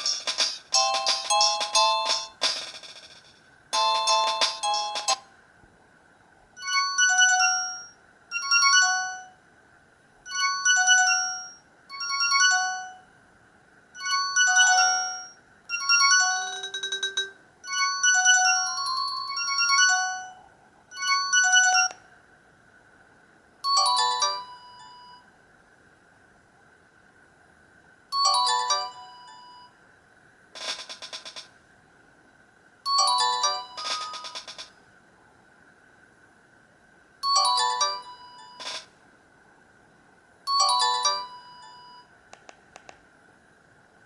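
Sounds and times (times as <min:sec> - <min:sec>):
electronic ringtone melody: 0:00.0 - 0:02.4, 0:03.8 - 0:05.2, 0:06.6 - 0:09.4, 0:10.3 - 0:13.0, 0:14.0 - 0:22.0, 0:23.7 - 0:25.3, 0:28.2 - 0:29.8, 0:32.9 - 0:34.7, 0:37.2 - 0:38.9, 0:40.5 - 0:42.1.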